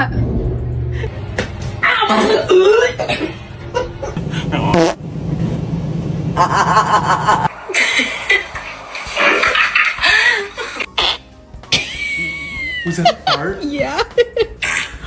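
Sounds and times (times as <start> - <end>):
people laughing and snickering: 6.4 - 15.0.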